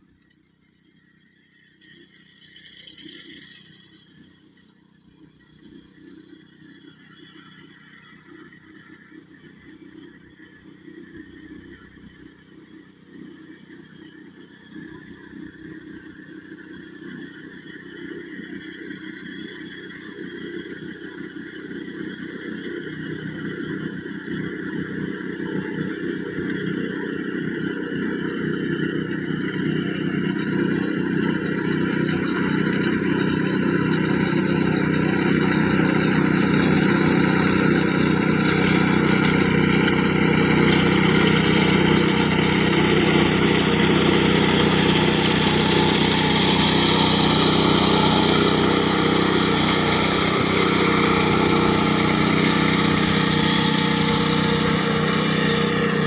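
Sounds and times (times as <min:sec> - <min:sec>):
harvester engine running: 0:29.1 - 0:56.0.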